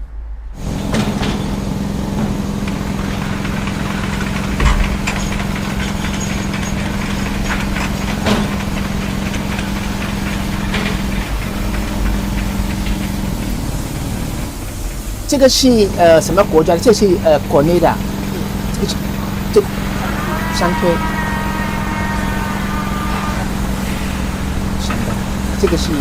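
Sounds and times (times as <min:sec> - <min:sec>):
diesel engine idling: 0:00.3 - 0:26.0
sharp knocks: 0:02.2 - 0:13.6.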